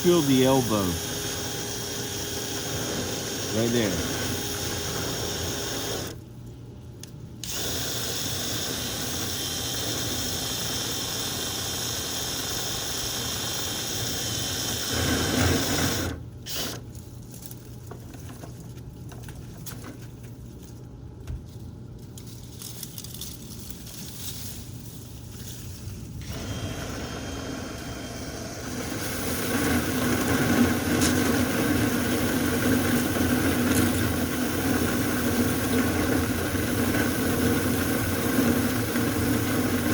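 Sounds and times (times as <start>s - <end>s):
dryer humming: 0.0s - 6.2s, 26.1s - 39.9s
power drill spinning brush: 0.0s - 6.2s, 7.4s - 16.8s, 26.2s - 39.9s.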